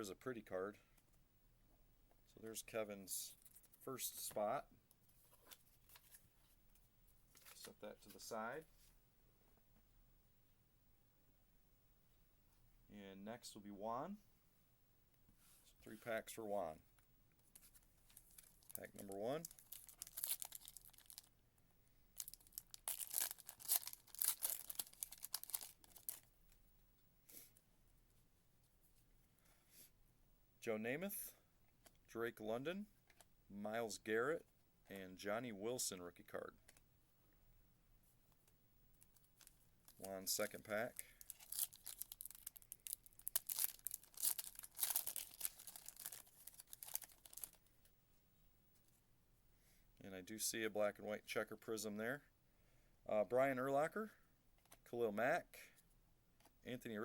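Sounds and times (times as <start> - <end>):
wrapper rustle: 17.5 - 21.3, 22.2 - 26.3, 39.0 - 47.6
card pack wrapper tearing: 18.1 - 21.3, 22.2 - 26.3, 39.4 - 47.6.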